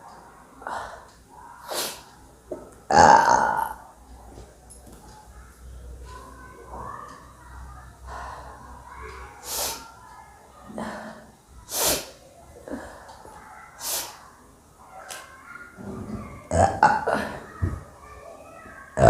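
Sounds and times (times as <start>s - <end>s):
small throat sounds: 2.9s - 3.8s, 16.5s - 17.2s
person's sharp breathy bursts: 9.4s - 9.8s, 11.7s - 12.2s, 13.8s - 14.2s.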